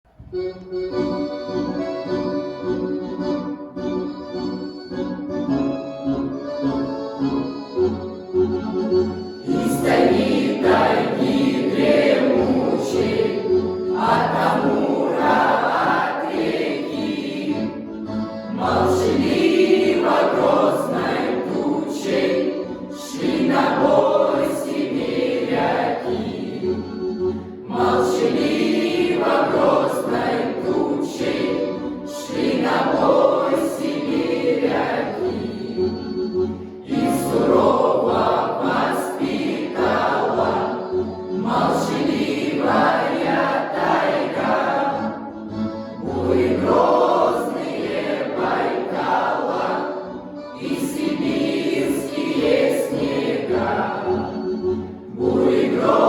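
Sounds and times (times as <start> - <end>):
instrumental accompaniment: 0.1 - 56.0
choir singing: 9.4 - 56.0.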